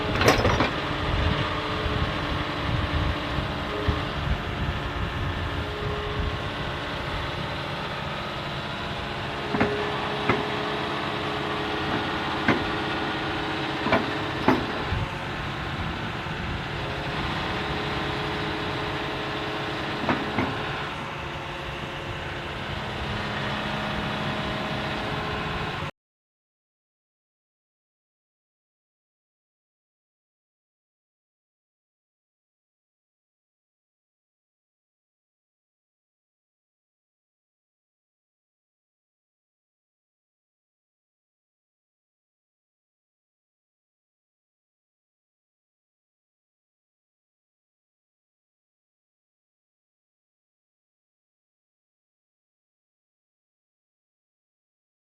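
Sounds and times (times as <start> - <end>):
excavator engine running: 0.0 - 25.9.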